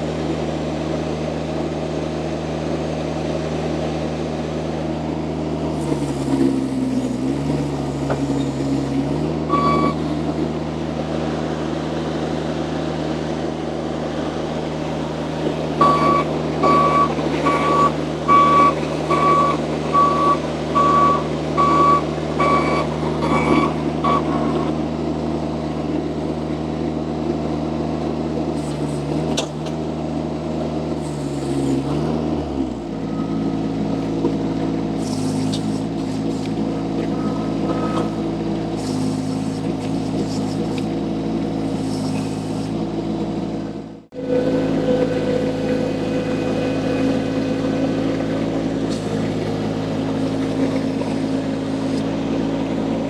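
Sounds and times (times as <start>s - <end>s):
skid steer engine running: 0.0s - 53.0s
reversing alarm beeps: 9.5s - 10.0s, 15.8s - 24.6s.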